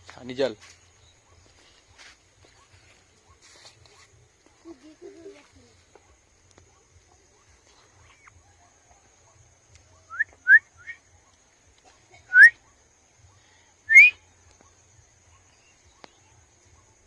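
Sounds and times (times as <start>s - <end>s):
small bird chirping: 13.9s - 17.0s.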